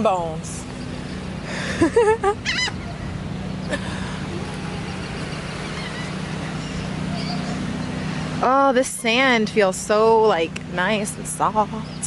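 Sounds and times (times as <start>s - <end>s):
steady low hum: 0.0s - 12.0s
bird calling: 0.6s - 9.4s.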